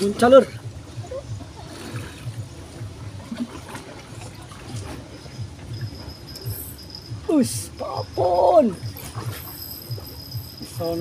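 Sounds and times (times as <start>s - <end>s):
river water flowing: 0.0s - 11.0s.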